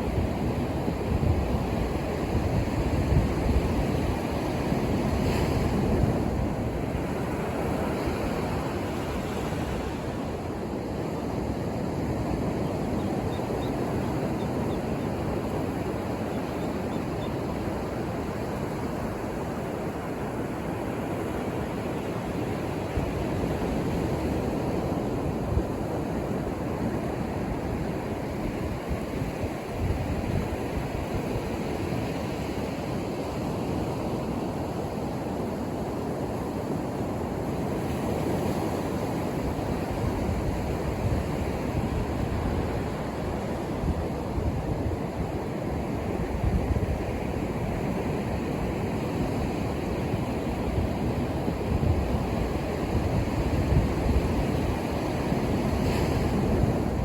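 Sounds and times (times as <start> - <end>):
wind on microphone: 0.0 - 21.2, 37.2 - 57.0
ocean waves breaking: 31.4 - 57.0.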